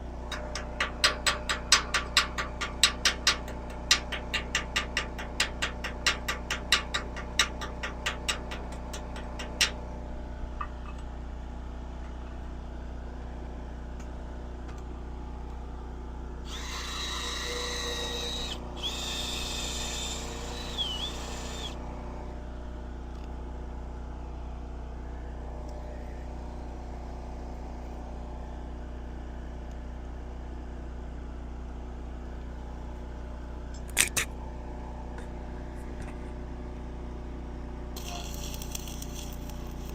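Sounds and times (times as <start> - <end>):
steady machine hum: 0.0 - 39.9
hissing power tool with whine: 16.4 - 22.0, 38.0 - 39.9.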